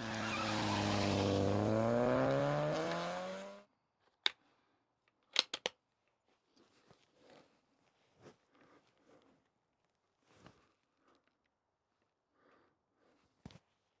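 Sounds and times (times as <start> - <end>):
car engine revving: 0.0 - 3.7
sharp clicks: 5.3 - 5.8.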